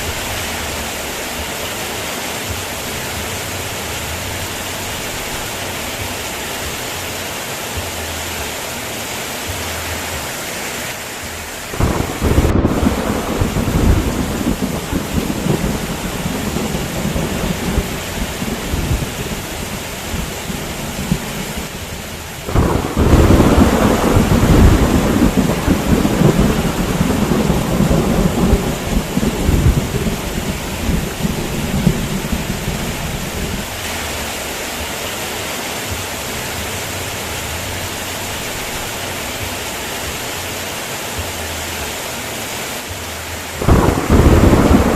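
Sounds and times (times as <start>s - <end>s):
heavy rain hissing: 0.0s - 44.9s
thunder rumbling: 11.7s - 33.9s, 43.6s - 44.9s.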